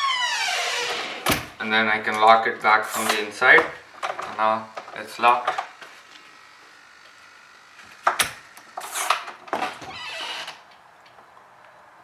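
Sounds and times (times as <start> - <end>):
door lock mechanism rattling: 0.0 - 5.8, 7.8 - 10.8.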